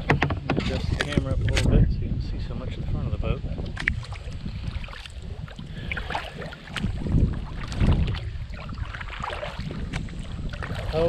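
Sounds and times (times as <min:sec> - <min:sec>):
wind rumbling on microphone: 0:00.0 - 0:11.0
paddle dipping and splashing: 0:03.6 - 0:11.0.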